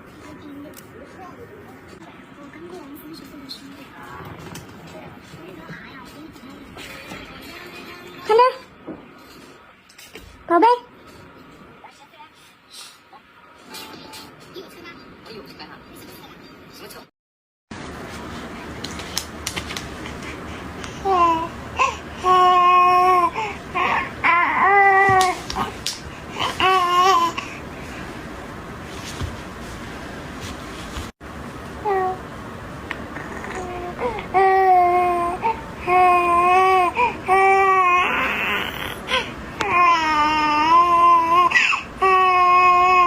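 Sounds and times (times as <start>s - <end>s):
baby vocalizing: 33.1s - 43.0s.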